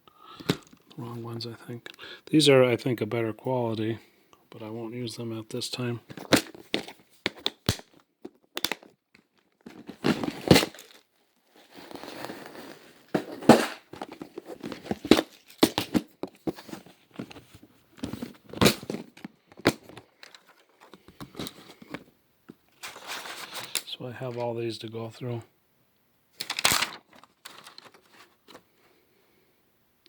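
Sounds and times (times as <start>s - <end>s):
crinkling of small packets: 5.8s - 17.4s, 18.9s - 22.0s, 22.7s - 24.4s, 26.4s - 28.6s.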